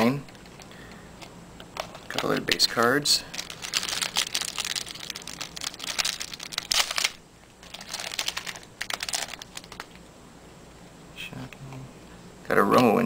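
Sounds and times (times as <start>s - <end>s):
trading cards flipped through: 3.4s - 10.0s.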